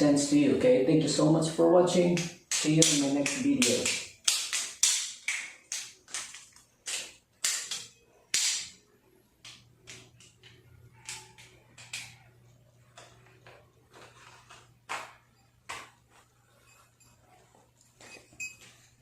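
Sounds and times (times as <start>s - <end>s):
sharp clacks: 2.2s - 8.8s.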